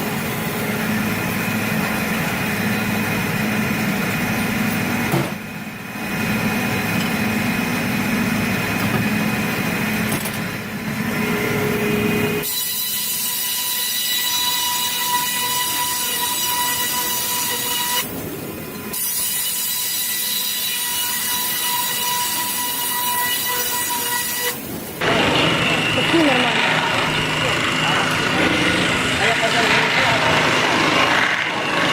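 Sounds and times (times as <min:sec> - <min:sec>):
high-pitched saw whine: 0:11.0 - 0:18.1, 0:18.9 - 0:31.9
machinery low drone: 0:25.0 - 0:31.9.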